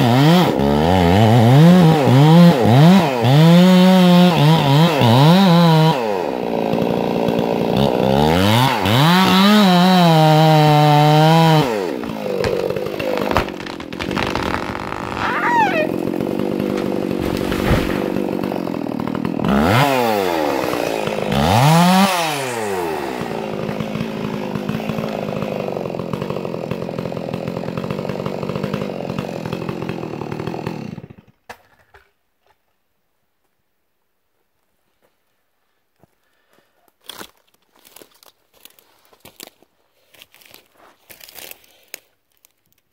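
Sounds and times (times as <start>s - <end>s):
chainsaw cutting trees: 0.0s - 31.4s.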